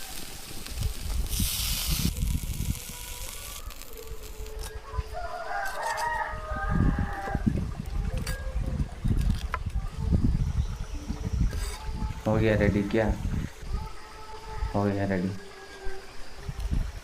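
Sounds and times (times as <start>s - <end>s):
brief hiss: 0.0s - 4.0s
rooster crowing: 4.9s - 7.5s.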